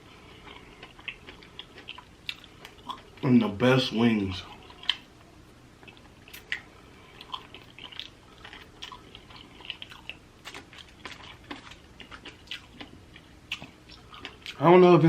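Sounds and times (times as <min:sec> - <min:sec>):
person chewing food: 0:00.0 - 0:03.2, 0:04.4 - 0:14.6
mouth clicks and crunches: 0:04.5 - 0:05.1, 0:05.8 - 0:14.6.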